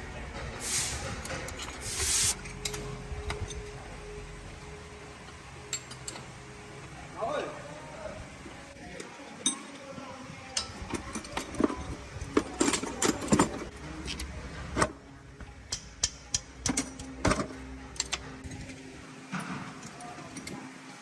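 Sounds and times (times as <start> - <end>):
metal tools clinking: 0.7 - 3.7, 10.6 - 13.7.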